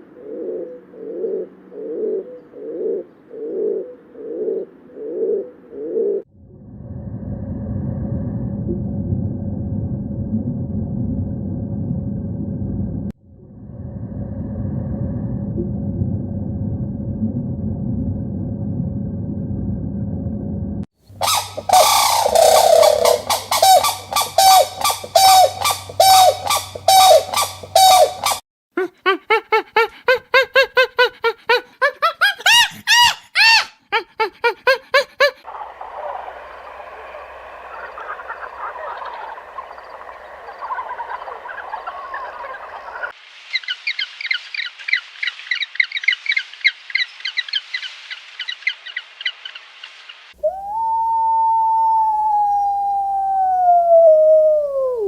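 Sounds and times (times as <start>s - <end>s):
animal giving harsh calls: 21.2s - 28.4s, 31.5s - 33.9s
flock of birds chattering: 21.2s - 28.4s, 35.5s - 43.7s
rapid high bird chirping: 21.2s - 28.4s, 35.5s - 50.2s.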